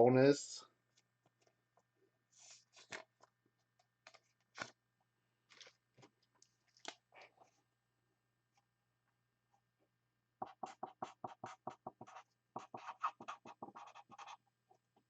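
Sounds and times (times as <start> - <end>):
pen scratching while writing: 10.4 - 14.4.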